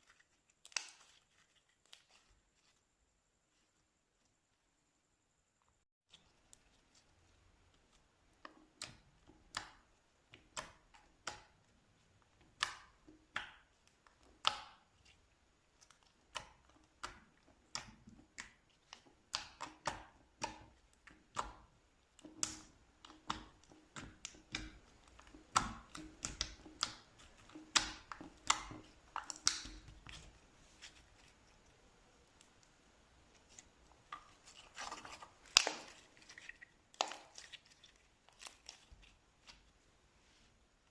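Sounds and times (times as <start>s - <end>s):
slime clicking and popping: 15.8s - 30.2s.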